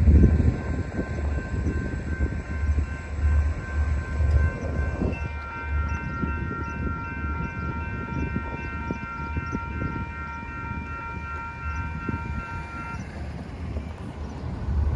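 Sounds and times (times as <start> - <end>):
freight train rumble: 0.0 - 14.9
locomotive air horn chord: 4.4 - 13.2.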